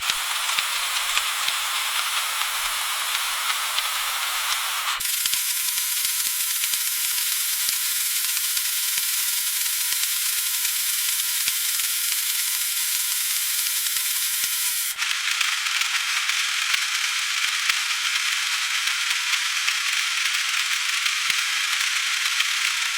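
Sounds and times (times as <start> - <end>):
food sizzling in hot oil: 0.0 - 15.0.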